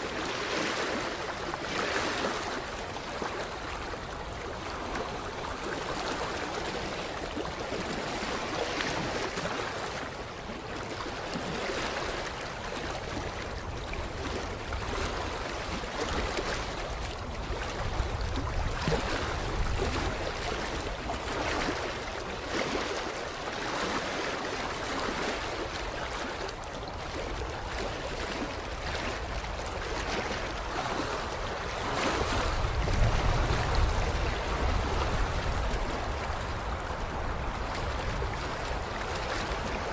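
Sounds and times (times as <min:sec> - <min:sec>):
small waves lapping shoreline: 0:00.0 - 0:39.9
wind buffeting microphone: 0:13.0 - 0:22.1, 0:26.8 - 0:39.9.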